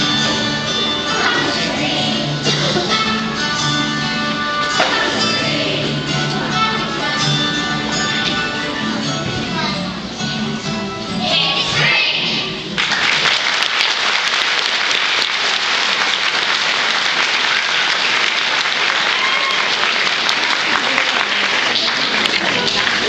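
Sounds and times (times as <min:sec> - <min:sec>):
audience applauding: 0:12.8 - 0:23.0.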